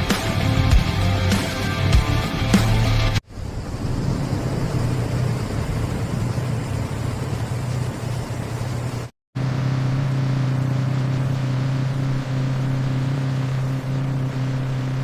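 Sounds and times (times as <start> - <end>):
engine hum: 0.0 - 15.0.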